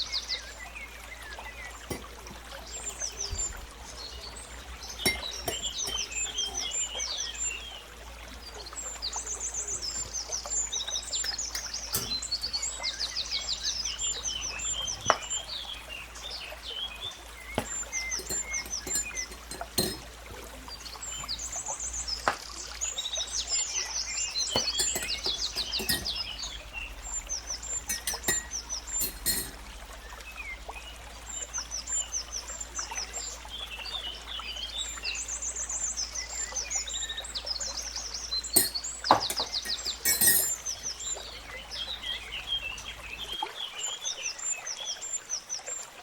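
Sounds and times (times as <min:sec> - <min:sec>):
sharp clicks and knocks: 0:11.3 - 0:12.6, 0:17.6 - 0:20.1, 0:24.6 - 0:26.2, 0:27.9 - 0:29.6, 0:38.6 - 0:40.6.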